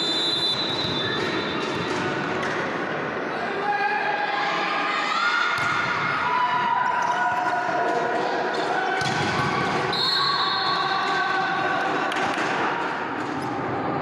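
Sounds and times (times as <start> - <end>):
crowd shouting and calling: 3.2 - 14.0.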